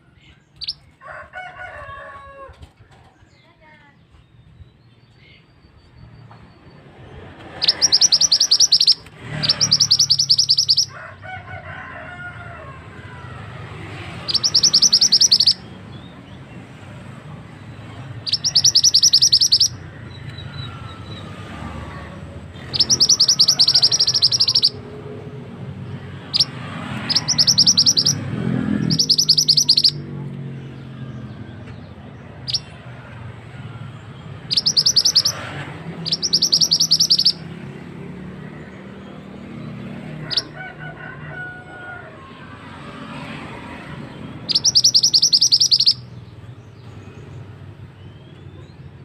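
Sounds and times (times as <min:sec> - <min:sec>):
bird high-pitched chipping calls: 0:00.5 - 0:00.9, 0:05.4 - 0:10.9, 0:13.5 - 0:25.1, 0:25.8 - 0:30.1, 0:31.6 - 0:33.1, 0:34.1 - 0:37.8, 0:40.2 - 0:40.6, 0:44.3 - 0:49.0.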